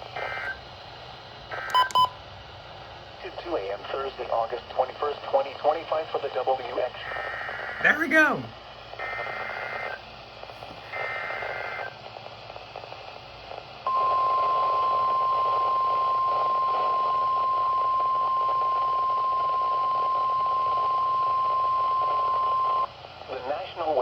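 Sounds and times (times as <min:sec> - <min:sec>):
static hiss: 0:00.0 - 0:01.8, 0:03.0 - 0:24.0
data tone bursts: 0:13.9 - 0:22.9
steady warning alarm tone: 0:13.9 - 0:22.9.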